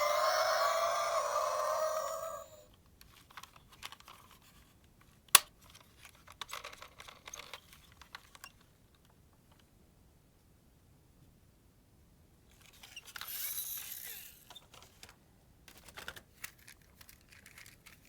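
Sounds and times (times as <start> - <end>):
light clicks of toys: 0.0 - 9.7, 12.5 - 18.0
crinkly packaging rustles: 3.1 - 8.7, 14.4 - 18.0.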